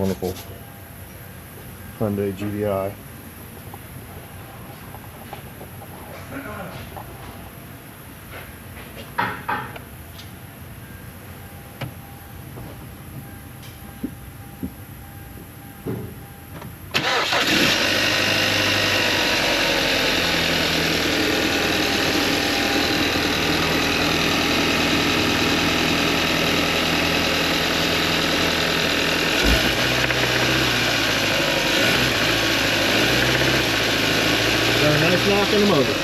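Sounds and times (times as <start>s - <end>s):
car engine starting and idling: 16.7s - 36.0s.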